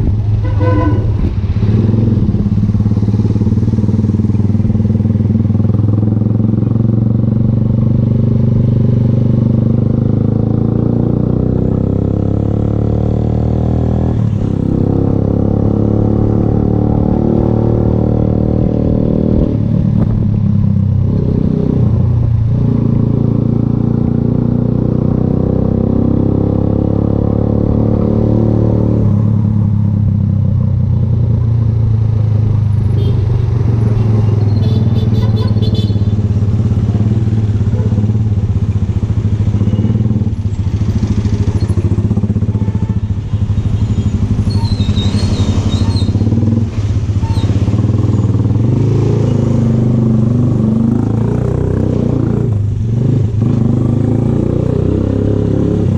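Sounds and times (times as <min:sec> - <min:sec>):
motorcycle engine cruising: 0:00.0 - 0:55.9.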